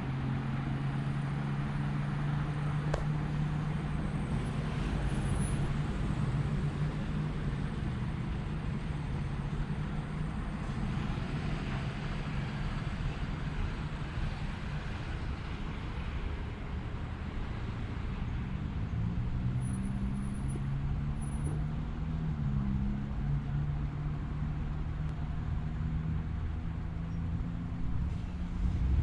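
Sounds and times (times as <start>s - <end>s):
tyre hiss of passing vehicle: 27.9s - 29.0s.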